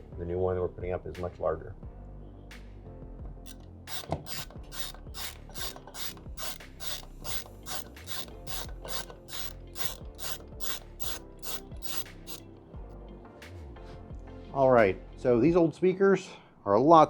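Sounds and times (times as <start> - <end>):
screwdriver rasping: 3.5 - 12.5.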